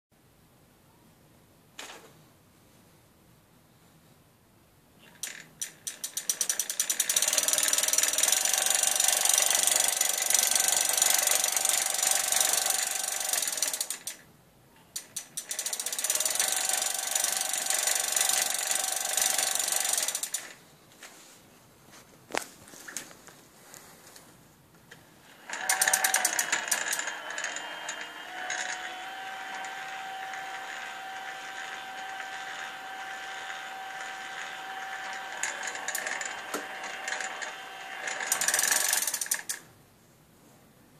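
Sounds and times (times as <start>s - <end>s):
e-bike motor clicking: 5.2s - 14.2s, 15.0s - 20.6s, 25.5s - 39.6s
faint motor whine: 25.2s - 39.3s.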